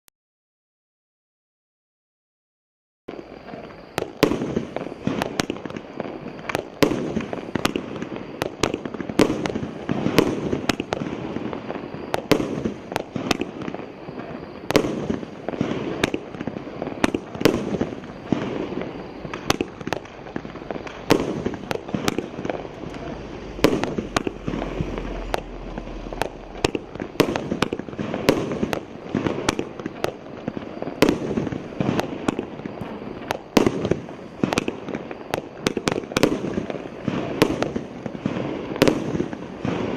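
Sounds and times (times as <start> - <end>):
firework bangs: 3.1 - 39.9
continuous noisy rush: 15.3 - 37.4.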